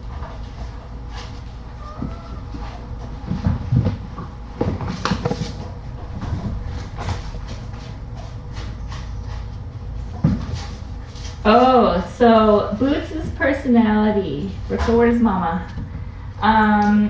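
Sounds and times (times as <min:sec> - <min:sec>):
kittens knocking and scuffing: 0:00.0 - 0:11.7
low hum: 0:00.0 - 0:17.0.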